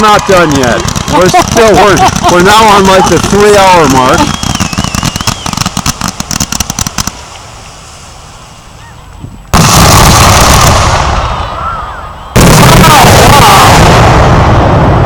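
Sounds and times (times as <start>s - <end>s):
fireworks crackling reports: 0.0s - 8.8s, 9.5s - 15.0s
loud rumbling firework boom: 9.5s - 15.0s.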